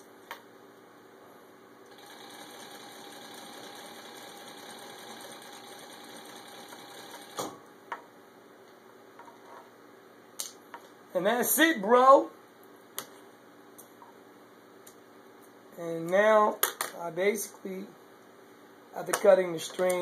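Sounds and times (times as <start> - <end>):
sewing machine stitching: 1.9 - 7.5.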